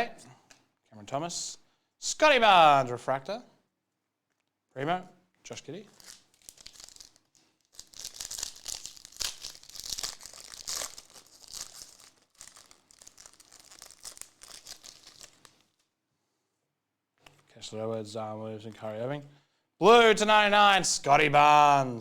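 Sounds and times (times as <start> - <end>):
foil wrappers crinkling and tearing: 5.9 - 15.8.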